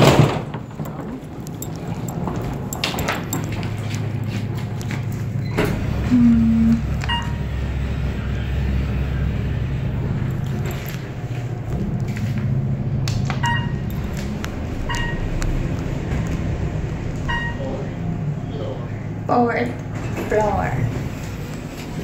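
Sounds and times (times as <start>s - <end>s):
elevator hum and rumble: 0.0s - 22.0s
short electronic beeps: 6.1s - 7.4s.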